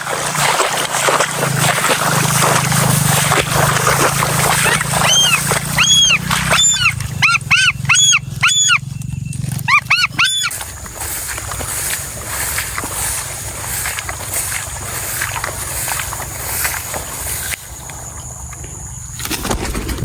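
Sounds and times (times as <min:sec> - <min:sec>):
steady low hum: 0:00.0 - 0:20.0
animal whistling calls: 0:04.3 - 0:11.2.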